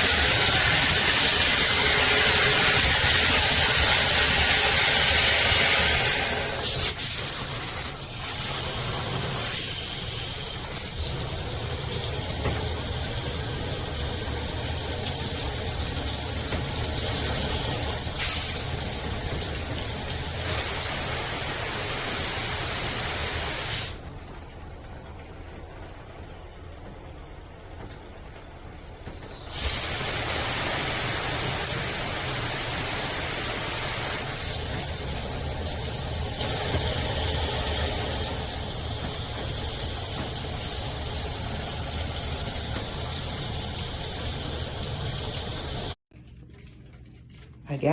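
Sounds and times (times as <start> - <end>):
shower head spraying water: 0.0 - 24.1, 29.1 - 46.0.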